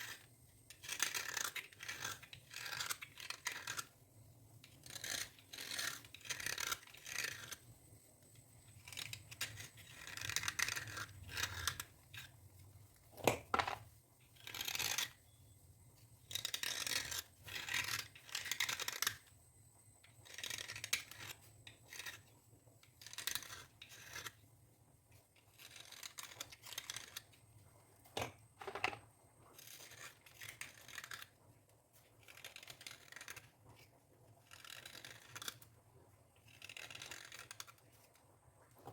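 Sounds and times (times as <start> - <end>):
scalp being scratched: 0.0 - 3.9, 4.7 - 7.6, 8.8 - 12.4, 14.4 - 15.2, 16.2 - 19.3, 20.2 - 22.3, 23.0 - 24.4, 25.4 - 27.3, 34.5 - 35.7, 36.5 - 37.8.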